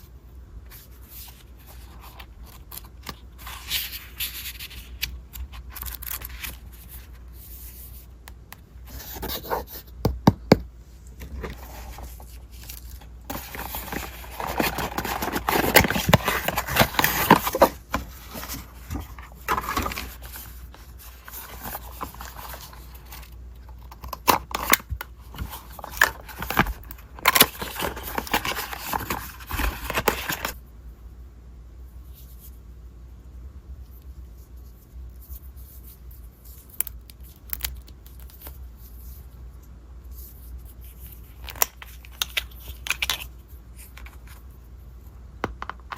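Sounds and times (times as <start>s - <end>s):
packaging rustling and tearing: 11.5s - 30.6s.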